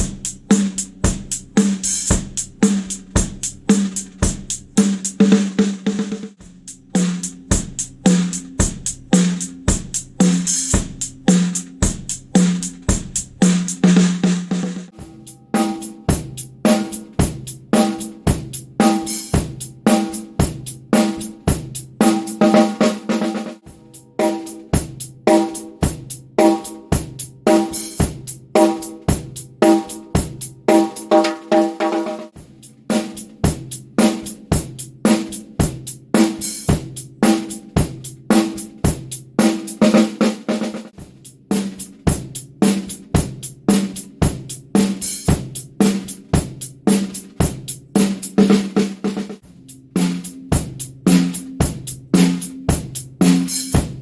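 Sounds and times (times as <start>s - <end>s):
drum kit groove: 0.0s - 54.0s
cymbal wash: 15.0s - 22.9s.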